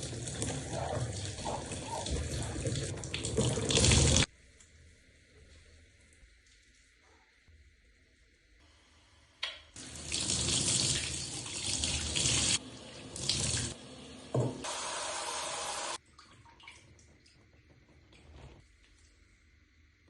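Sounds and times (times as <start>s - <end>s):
running water rinsing hair: 0.0s - 4.3s, 9.8s - 16.7s.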